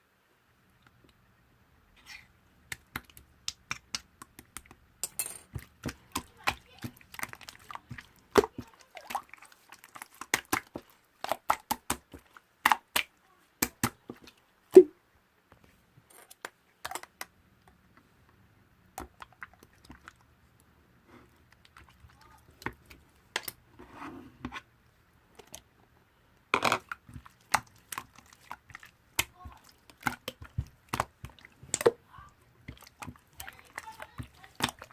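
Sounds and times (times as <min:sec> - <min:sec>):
slime being squished by hand: 0:05.5 - 0:14.9, 0:26.7 - 0:34.9.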